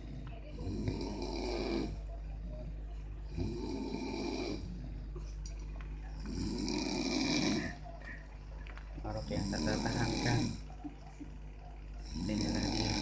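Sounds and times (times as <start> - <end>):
person snoring: 0.0 - 2.0, 3.2 - 5.1, 6.2 - 7.8, 9.2 - 10.7, 12.0 - 13.0.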